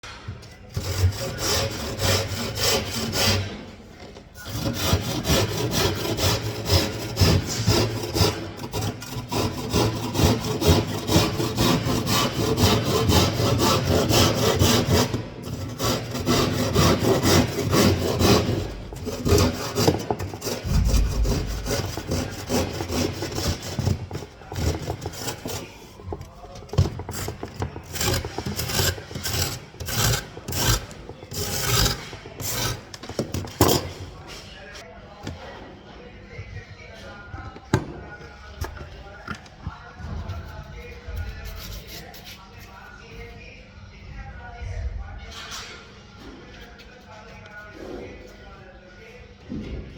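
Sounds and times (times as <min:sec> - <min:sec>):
hand saw cutting board: 0:00.7 - 0:03.7, 0:04.4 - 0:34.0.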